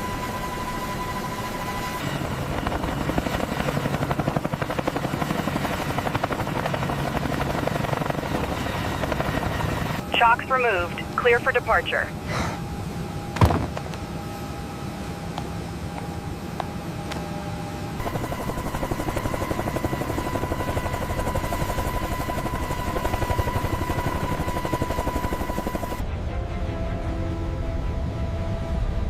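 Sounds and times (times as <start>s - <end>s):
helicopter rotor beating: 0.0s - 12.2s, 18.0s - 26.0s
high turbine whine: 0.0s - 26.1s.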